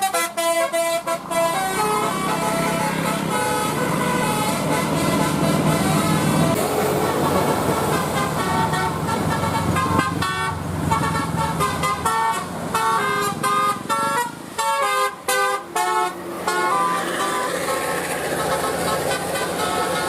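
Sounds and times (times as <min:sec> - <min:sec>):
engine noise: 0:00.0 - 0:20.0
musical bus horn: 0:00.0 - 0:20.0.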